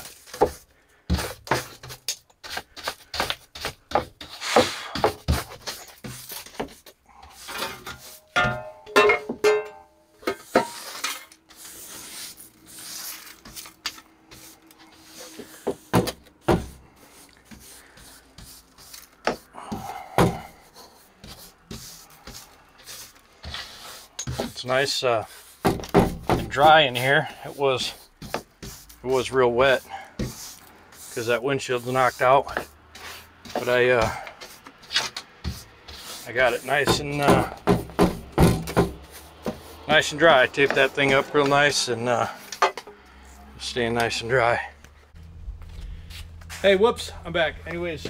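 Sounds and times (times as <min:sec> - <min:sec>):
scraping on steel floor: 0:10.2 - 0:24.6.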